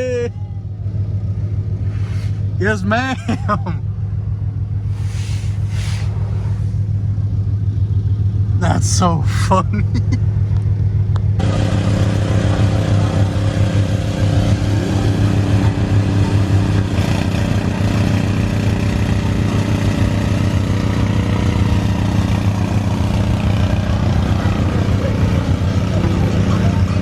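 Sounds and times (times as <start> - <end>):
car engine idling: 0.0 - 11.4.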